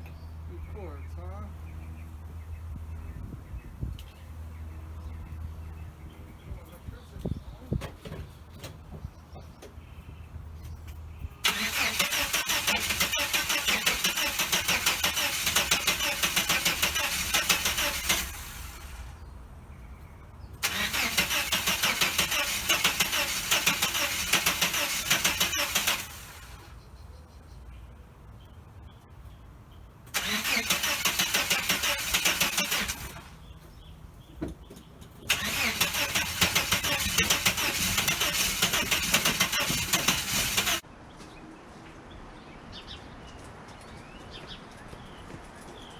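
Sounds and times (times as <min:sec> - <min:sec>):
starter motor cranking engine: 0:11.4 - 0:19.3, 0:20.5 - 0:26.8, 0:30.1 - 0:33.9, 0:35.3 - 0:40.8.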